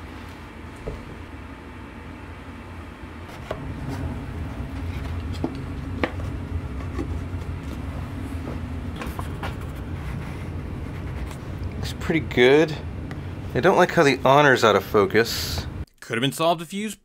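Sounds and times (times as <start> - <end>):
low rumble: 3.4 - 9.0.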